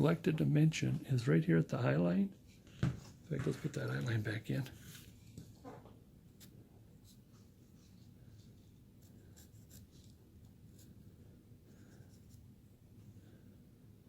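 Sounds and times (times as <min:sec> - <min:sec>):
carving tool scratching wood: 0:09.0 - 0:11.1.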